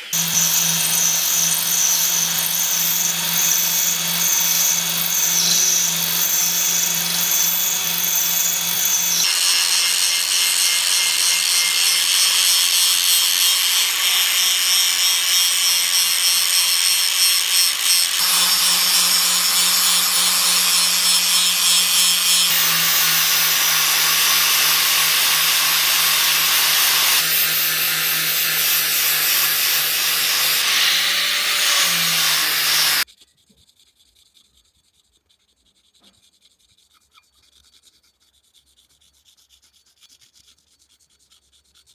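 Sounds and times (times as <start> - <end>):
power tool grinding: 0.0 - 33.1.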